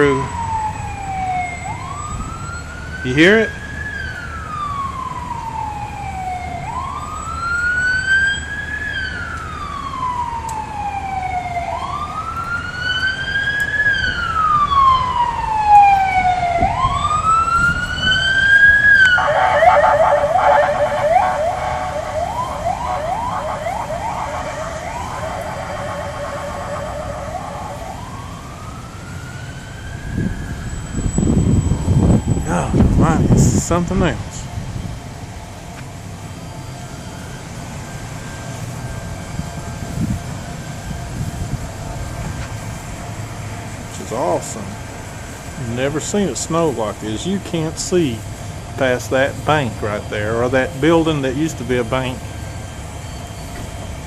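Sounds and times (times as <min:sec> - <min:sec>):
emergency vehicle siren wailing: 0:00.0 - 0:54.0.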